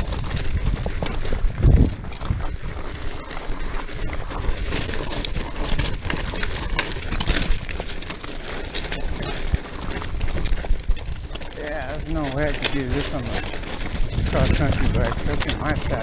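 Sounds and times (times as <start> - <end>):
bike rattling and clattering: 0.0 - 16.0
bike tires crunching over rocks: 0.0 - 16.0.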